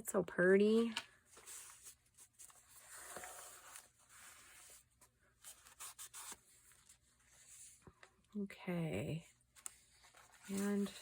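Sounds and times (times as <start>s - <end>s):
paper rustling and scraping: 1.2s - 7.9s, 9.5s - 11.0s.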